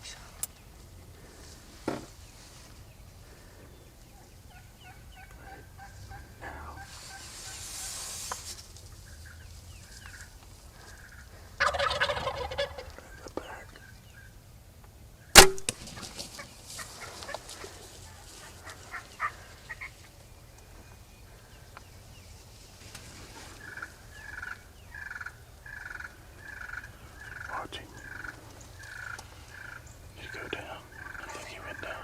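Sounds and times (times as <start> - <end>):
turkey yelping: 4.5 - 8.0, 11.1 - 13.2, 16.8 - 19.9, 23.6 - 29.9, 30.9 - 31.7
falling turkey call: 11.6 - 13.0
sharp loud knock: 15.4 - 15.8.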